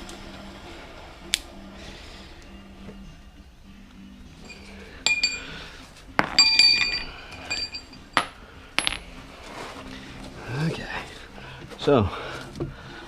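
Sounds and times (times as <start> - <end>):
metal tools clinking together: 4.4 - 5.6, 6.2 - 9.1.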